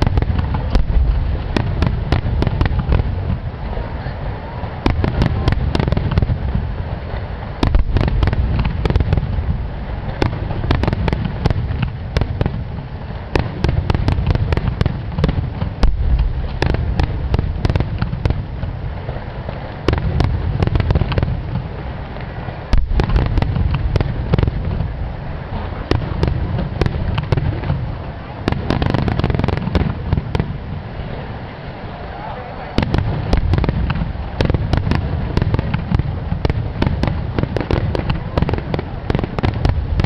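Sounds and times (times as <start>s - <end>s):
fireworks cracking: 0.0s - 40.0s
heavy continuous rumble: 0.0s - 40.0s.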